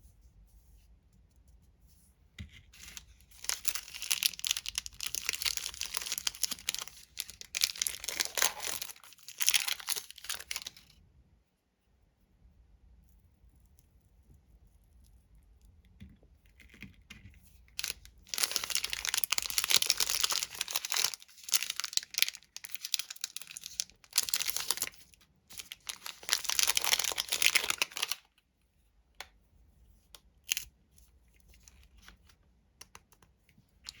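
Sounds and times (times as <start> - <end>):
candy wrapper crinkling: 2.8 - 10.9, 17.7 - 28.4.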